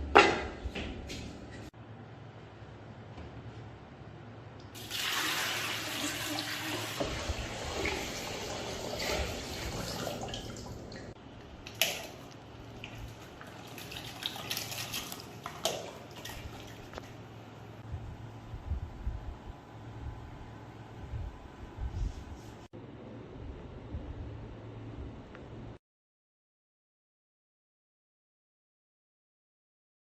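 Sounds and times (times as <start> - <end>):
water running from tap: 4.8 - 11.2.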